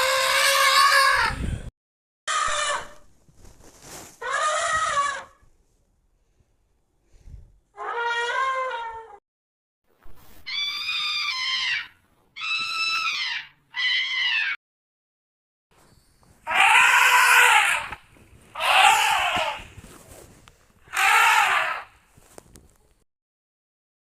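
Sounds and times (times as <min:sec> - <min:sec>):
elephant trumpeting: 0:16.5 - 0:18.0, 0:18.6 - 0:19.6, 0:20.9 - 0:21.9.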